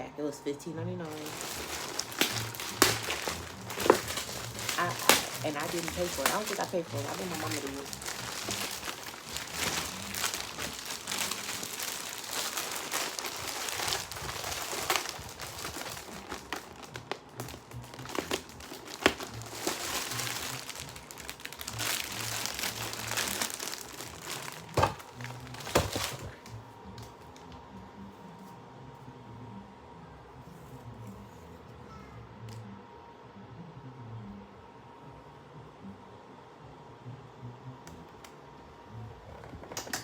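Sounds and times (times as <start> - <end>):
crinkling and rustling: 1.0 - 27.6.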